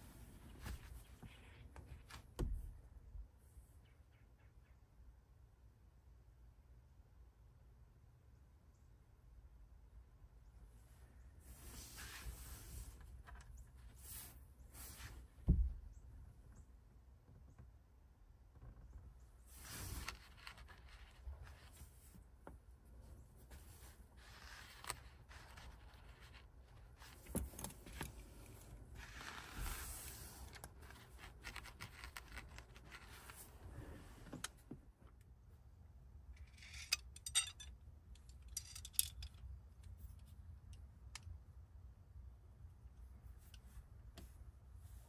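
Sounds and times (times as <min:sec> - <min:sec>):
ramrod in rifle barrel: 0:36.4 - 0:41.3.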